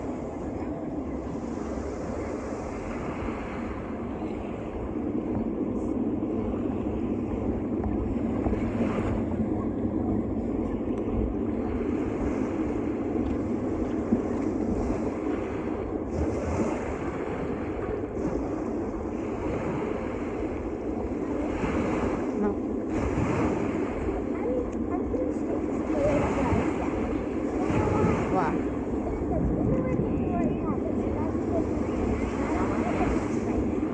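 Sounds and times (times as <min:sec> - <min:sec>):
surf: 0:00.0 - 0:33.9
wind buffeting microphone: 0:00.0 - 0:33.9
wind rushing: 0:25.2 - 0:33.9.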